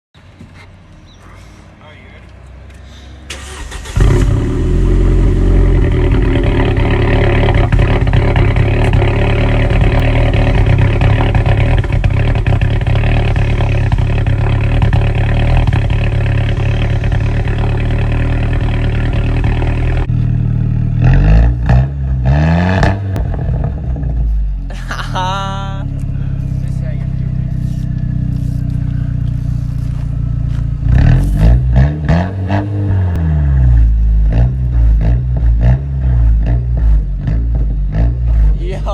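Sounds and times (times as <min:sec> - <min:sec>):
engine revving: 0:03.3 - 0:24.3, 0:25.5 - 0:38.9
car engine running loud: 0:03.4 - 0:38.9.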